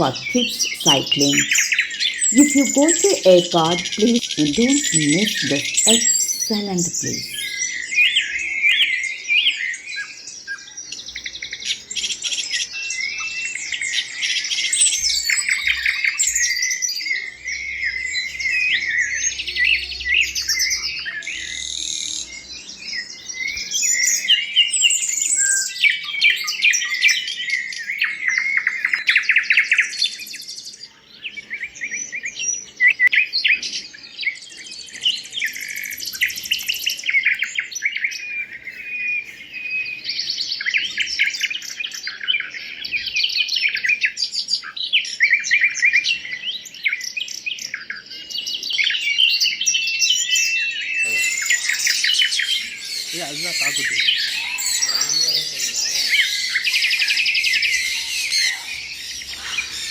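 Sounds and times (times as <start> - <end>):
flock of birds chirping: 0.0 - 59.9.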